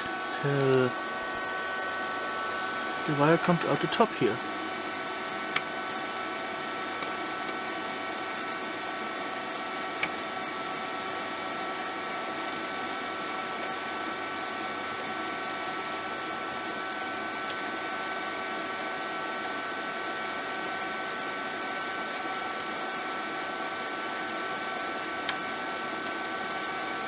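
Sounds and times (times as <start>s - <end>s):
wire feed motor whining: 0.0s - 27.0s.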